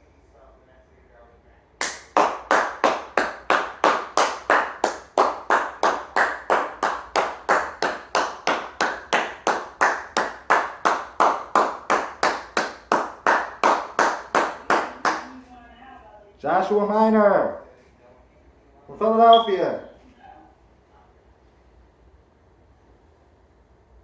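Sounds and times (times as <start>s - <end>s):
hands clapping: 1.8s - 15.4s.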